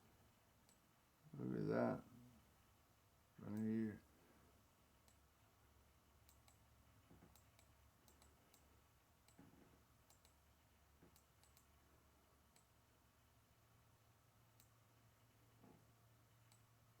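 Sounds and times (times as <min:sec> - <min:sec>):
faint sharp clicks: 0:05.0 - 0:05.2, 0:06.2 - 0:06.6, 0:07.2 - 0:09.4, 0:10.0 - 0:10.4, 0:11.0 - 0:11.7, 0:14.6 - 0:14.8.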